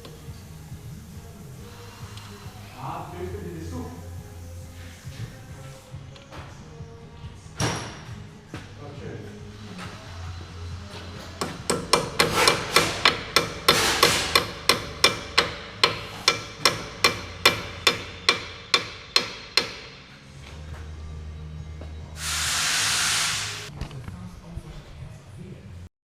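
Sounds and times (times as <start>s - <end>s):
hiss: 0.0s - 3.1s, 4.2s - 6.0s, 22.2s - 23.7s.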